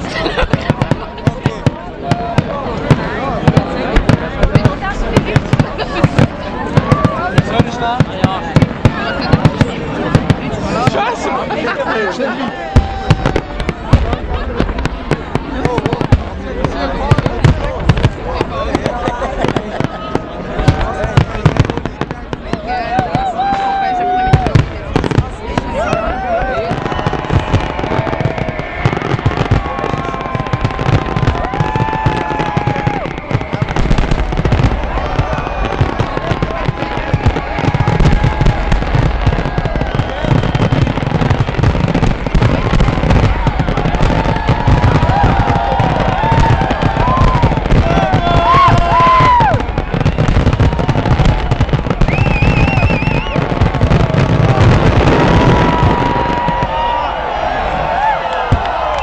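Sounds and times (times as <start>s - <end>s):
fireworks bangs and crackles: 0.0s - 59.0s
warbling firework whistle: 26.8s - 42.0s, 43.5s - 57.4s.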